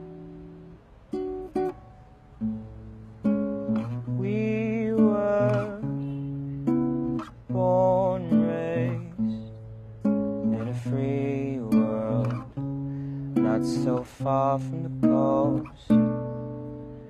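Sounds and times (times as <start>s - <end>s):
acoustic guitar plucked chords: 0.0s - 17.0s
wordless sung vocals: 3.7s - 16.9s.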